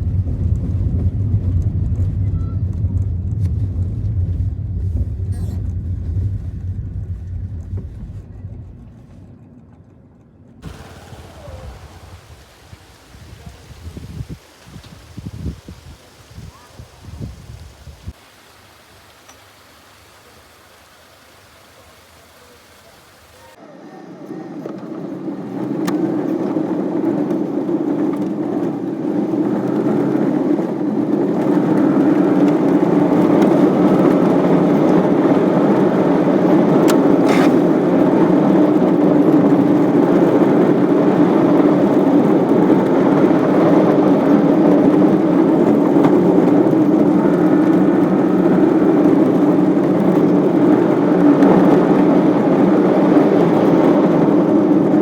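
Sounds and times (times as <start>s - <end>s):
waterfall rushing: 10.6s - 23.6s.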